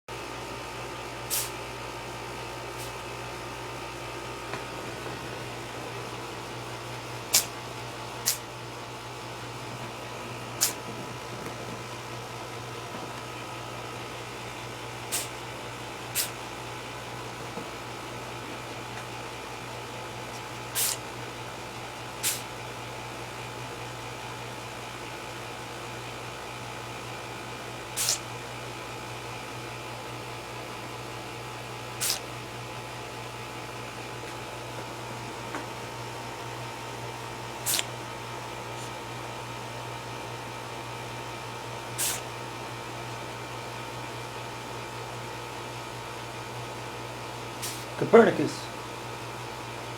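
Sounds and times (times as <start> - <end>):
steady background hum: 0.2 - 49.9
cat sneezing: 1.3 - 1.6, 2.8 - 3.0, 7.2 - 7.6, 8.2 - 8.5, 10.5 - 11.2, 15.1 - 15.4, 16.1 - 16.4, 20.3 - 21.1, 22.2 - 22.5, 27.9 - 28.3, 32.0 - 32.3, 37.6 - 38.0, 42.0 - 42.3, 47.6 - 48.0.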